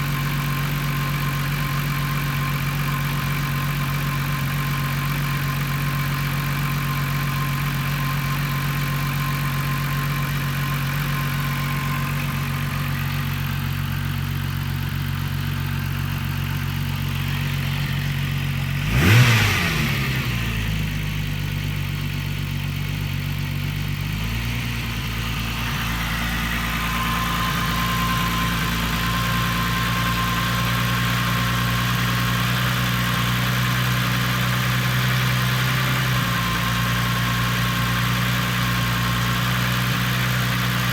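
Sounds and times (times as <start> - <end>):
car engine idling roughly: 0.0 - 40.9.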